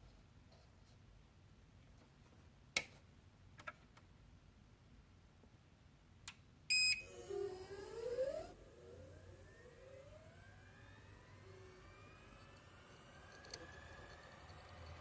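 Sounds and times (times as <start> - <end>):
loud high beep: 6.7 - 7.1
spindle motor spinning up: 6.8 - 15.0
low hum: 7.0 - 15.0.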